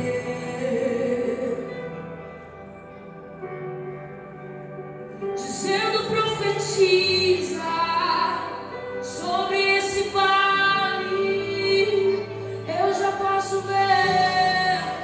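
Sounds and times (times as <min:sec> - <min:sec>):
woman singing: 0:00.0 - 0:02.4, 0:05.4 - 0:15.0.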